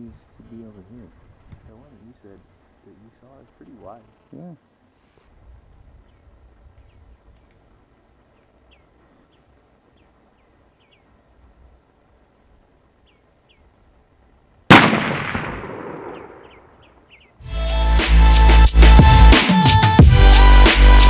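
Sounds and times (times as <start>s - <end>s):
faint bird chirps: 0.0s - 13.8s, 16.0s - 17.4s
rifle shot with echo: 14.7s - 16.8s.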